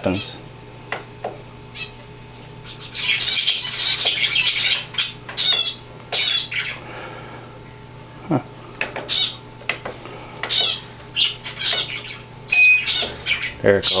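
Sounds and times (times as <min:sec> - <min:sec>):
small bird chirping and squawking: 0:00.0 - 0:00.4, 0:01.7 - 0:06.8, 0:09.1 - 0:09.4, 0:10.4 - 0:14.0.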